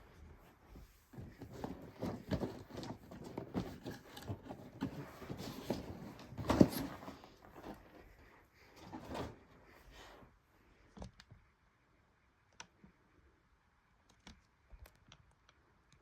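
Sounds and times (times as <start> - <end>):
packaging knocks and rustles: 1.2 - 8.0.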